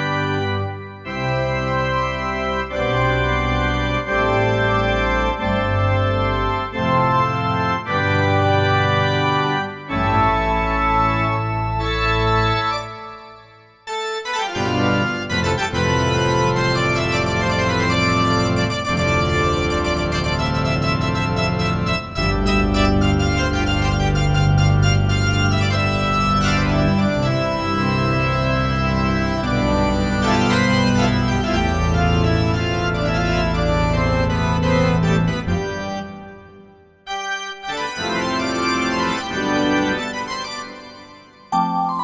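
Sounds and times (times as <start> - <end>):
synthesizer playing chords: 41.5 - 42.0.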